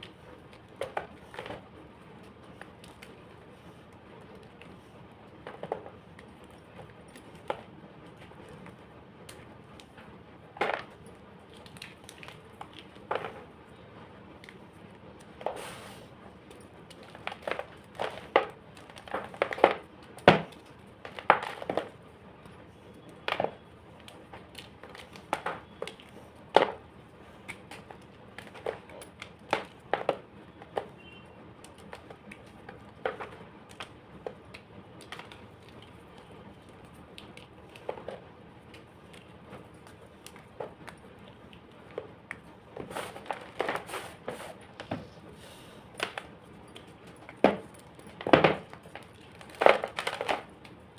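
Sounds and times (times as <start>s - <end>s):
chalk being crunched: 38.7s - 46.2s.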